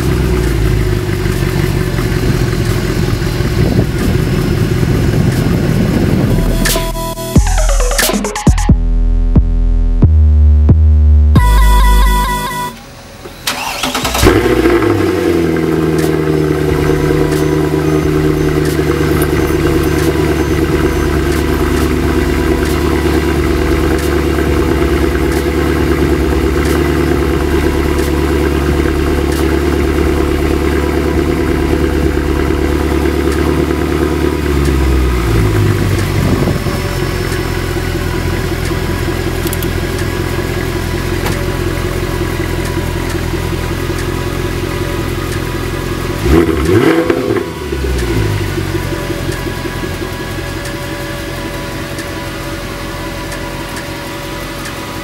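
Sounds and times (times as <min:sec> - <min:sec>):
car engine idling: 0:00.0 - 0:06.8, 0:11.4 - 0:55.0.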